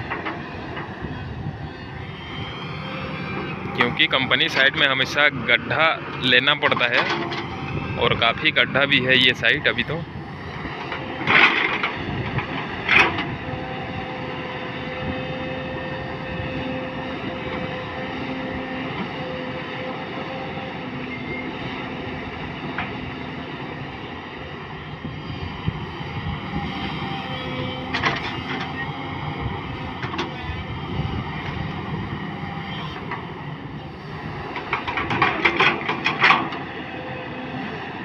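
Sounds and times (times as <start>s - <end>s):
excavator diesel engine running: 0.0s - 38.0s
clanks and clatter: 11.2s - 13.3s, 34.6s - 36.6s.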